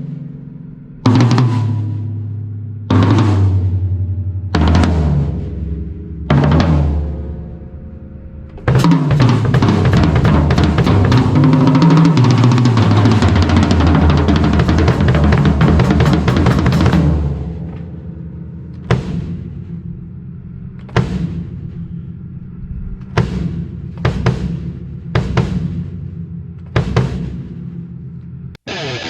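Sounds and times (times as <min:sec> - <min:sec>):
drum roll on toms: 0:00.0 - 0:07.6, 0:08.5 - 0:20.1, 0:20.7 - 0:22.0, 0:23.0 - 0:28.0
single drum strokes: 0:08.5 - 0:19.8.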